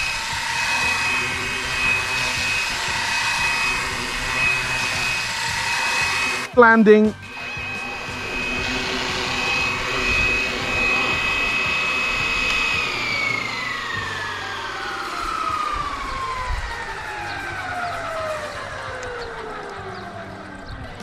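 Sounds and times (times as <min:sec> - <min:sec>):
rc helicopter motor and rotors whining: 0:00.0 - 0:21.0.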